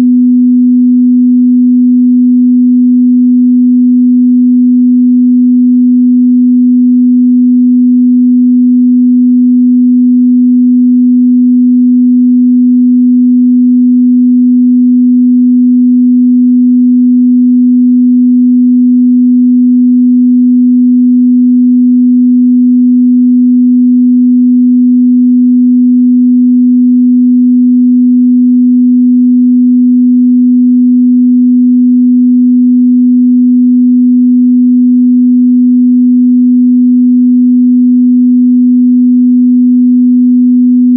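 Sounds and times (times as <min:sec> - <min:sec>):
steady sine wave test tone: 0:00.0 - 0:40.9.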